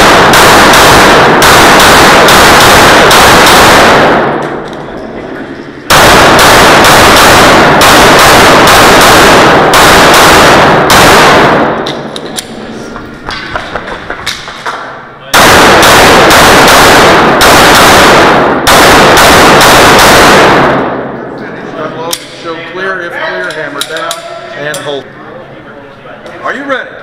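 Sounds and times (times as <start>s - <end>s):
pistol shots echoing indoors: 0.0s - 4.9s, 5.8s - 12.7s, 14.2s - 21.3s.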